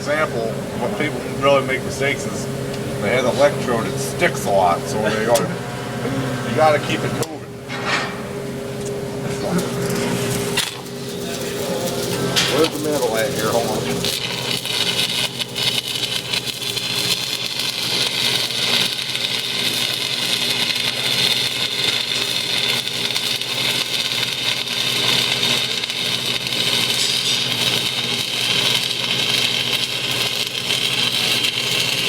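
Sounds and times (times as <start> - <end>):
low hum: 0.4 - 14.3
welding arc crackling: 9.4 - 32.0.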